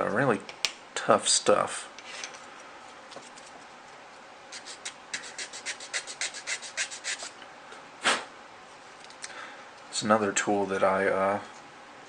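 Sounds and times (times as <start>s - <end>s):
file rasping on plastic: 4.6s - 7.3s.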